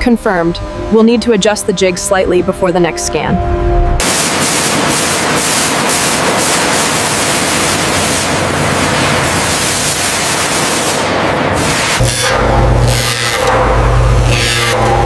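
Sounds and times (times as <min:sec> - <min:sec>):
loud steady hiss: 0:04.0 - 0:12.2.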